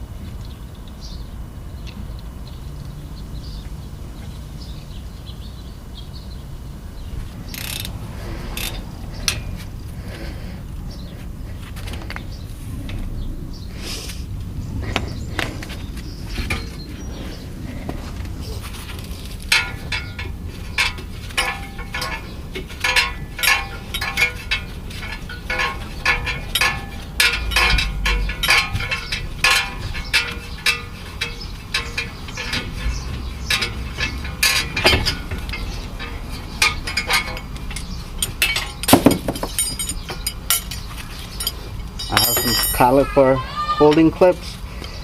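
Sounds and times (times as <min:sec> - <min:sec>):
metallic clinks of brake parts: 0:07.5 - 0:09.6, 0:19.2 - 0:43.2.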